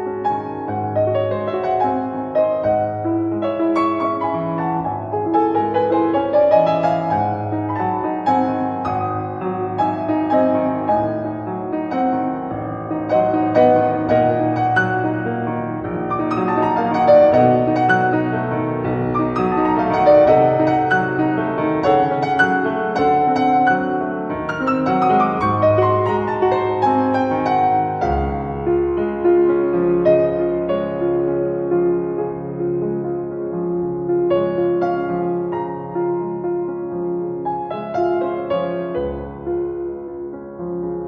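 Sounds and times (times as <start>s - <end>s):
instrumental piano music: 0.0s - 41.0s.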